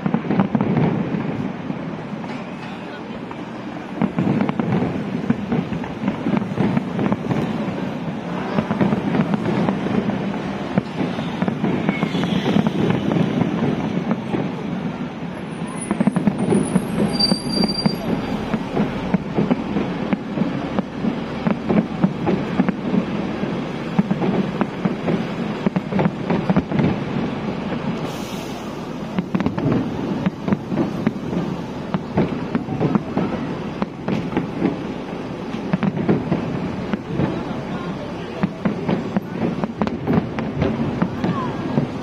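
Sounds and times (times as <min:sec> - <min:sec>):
fireworks bangs and crackling pops: 0:00.0 - 0:42.0
high hiss: 0:27.8 - 0:31.9.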